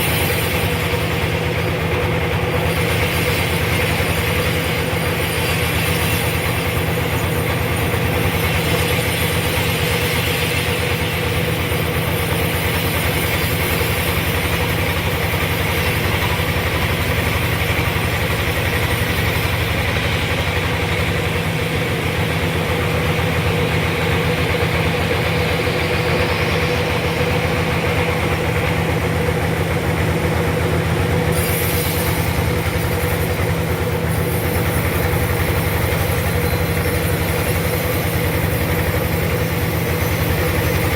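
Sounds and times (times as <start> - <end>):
sawmill sawing log: 0.0 - 40.9.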